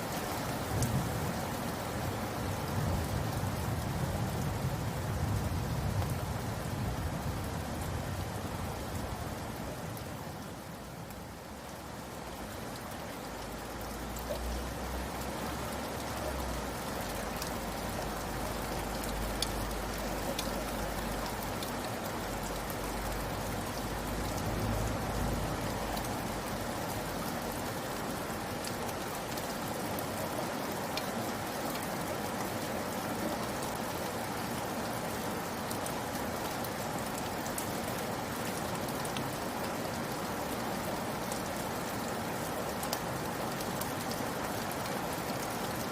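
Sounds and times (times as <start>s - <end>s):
steady rain falling: 0.0s - 45.9s
raindrop clicks: 18.7s - 22.7s.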